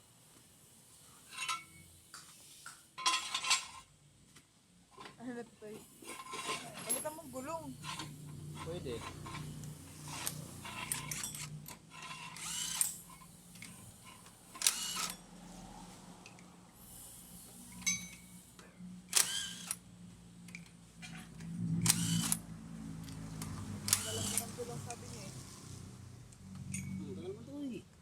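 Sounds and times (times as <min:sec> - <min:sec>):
metallic tool clicks and clinks: 0:06.2 - 0:13.8, 0:17.7 - 0:18.3, 0:26.7 - 0:27.0.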